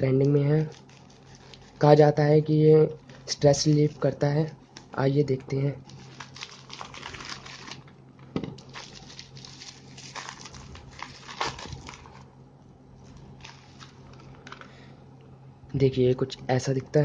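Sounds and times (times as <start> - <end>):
packaging rustling and crinkling: 0.2 - 1.9, 5.8 - 7.9, 8.6 - 12.3, 13.0 - 14.8.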